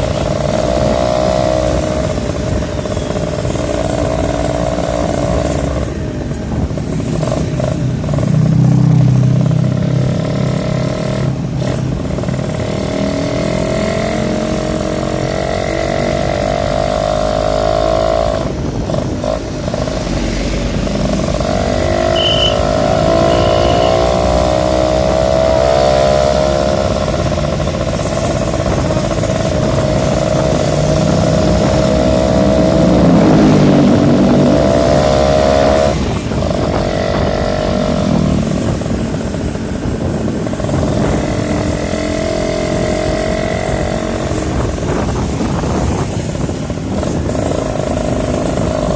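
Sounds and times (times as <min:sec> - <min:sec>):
motorcycle engine accelerating: 0:00.0 - 0:48.9.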